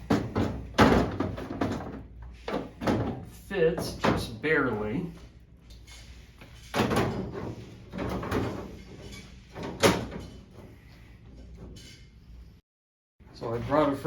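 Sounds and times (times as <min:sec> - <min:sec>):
metal cage clunking and rattling: 0:06.5 - 0:10.8.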